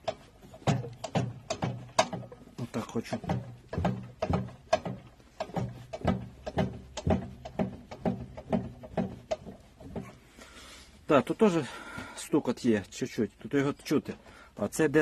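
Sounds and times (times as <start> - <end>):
regular engine knock: 0.0 - 10.2
generator engine humming: 0.0 - 11.0.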